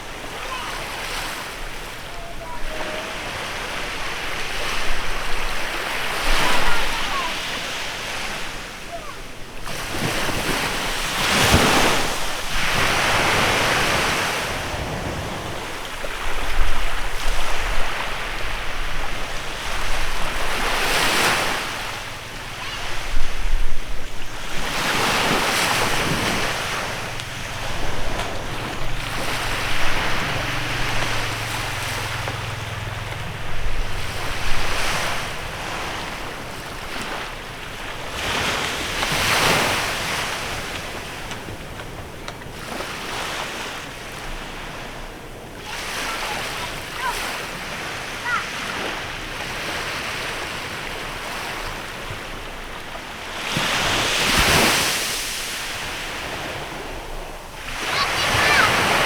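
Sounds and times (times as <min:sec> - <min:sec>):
small waves washing onto beach: 0:00.0 - 0:59.0
wind buffeting microphone: 0:09.3 - 0:42.8.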